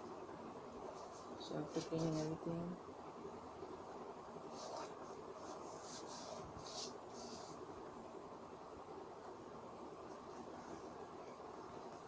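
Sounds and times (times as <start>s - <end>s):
faint background hiss: 0.0s - 12.0s
soft rustles: 0.8s - 2.6s, 4.4s - 7.7s.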